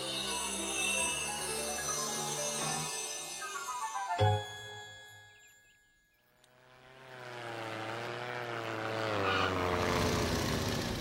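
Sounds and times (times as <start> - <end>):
cartoon propeller plane engine droning: 6.4 - 11.0.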